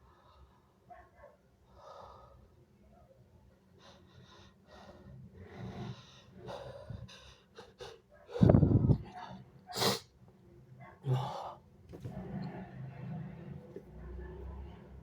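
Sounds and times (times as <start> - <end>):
person gasping breaths: 3.8 - 9.2
loud wet sneeze: 9.7 - 10.1.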